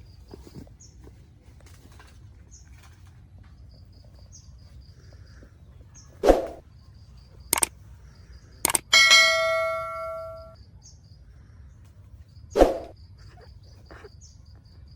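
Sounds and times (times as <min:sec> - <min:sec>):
outdoor background noise: 0:00.0 - 0:14.9
sharp noise: 0:08.7 - 0:10.5
high chirping: 0:08.7 - 0:10.6.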